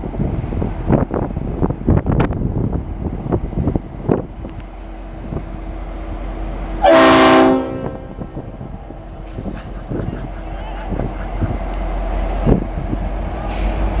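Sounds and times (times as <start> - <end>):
wind buffeting microphone: 0.0 - 6.7, 7.6 - 14.0
locomotive air horn blast: 6.8 - 8.3.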